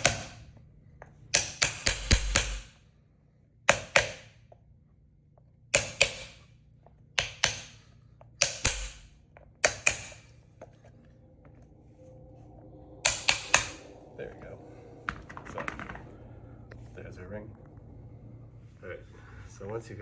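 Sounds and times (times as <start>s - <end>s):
hammer knocking on wood block: 3.7s - 4.2s.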